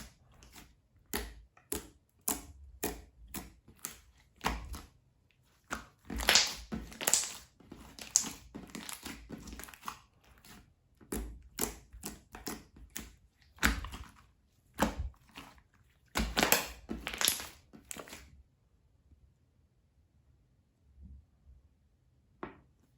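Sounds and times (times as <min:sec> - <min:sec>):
slime squishing by hand: 0:00.0 - 0:18.3.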